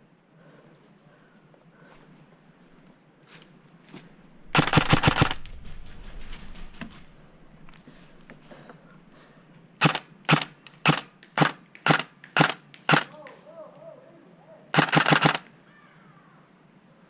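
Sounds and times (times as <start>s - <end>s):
airsoft gun shots: 4.5s - 5.5s, 9.8s - 13.2s, 14.8s - 15.4s.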